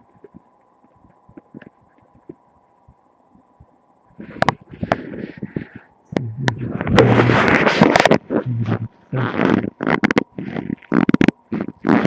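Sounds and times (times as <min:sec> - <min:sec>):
loud rumble with rubbing: 0:04.8 - 0:12.0.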